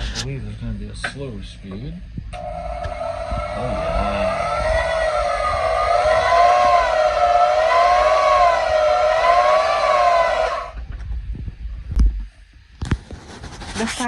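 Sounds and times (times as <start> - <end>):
band saw motor whine: 0.0 - 10.8.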